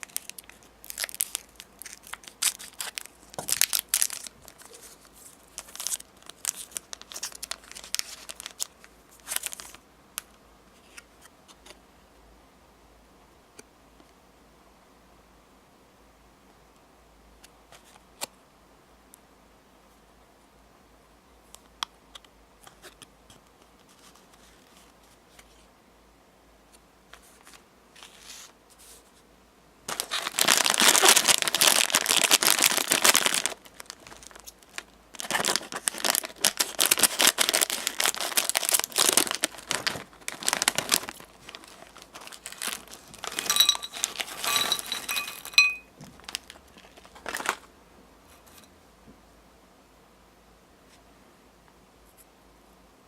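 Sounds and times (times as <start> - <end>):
plastic packaging crinkling: 0.0 - 9.8, 29.9 - 47.7.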